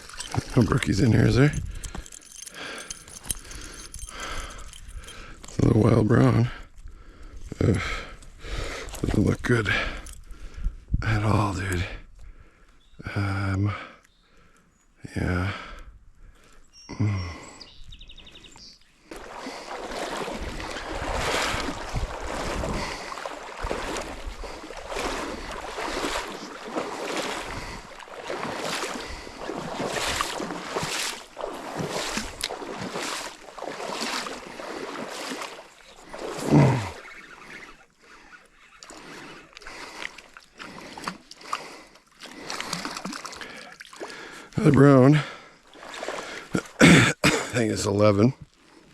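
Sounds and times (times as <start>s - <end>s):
water sloshing in a creek: 0.0s - 10.3s, 16.7s - 48.9s
wind rumble on microphone: 0.3s - 2.0s, 10.1s - 11.2s, 20.2s - 26.1s.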